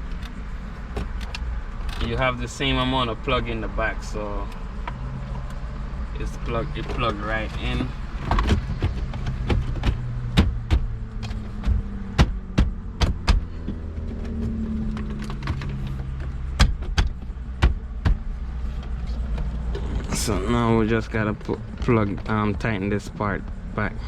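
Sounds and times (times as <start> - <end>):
plastic clicks and knocks: 6.8 - 19.9.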